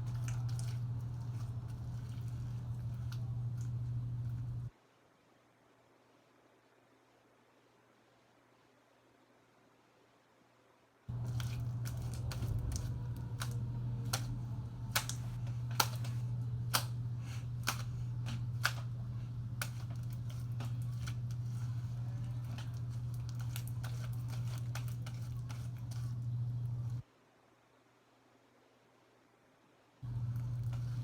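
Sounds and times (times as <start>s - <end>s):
steady low hum: 0.0s - 4.8s, 11.1s - 27.0s, 30.0s - 31.0s.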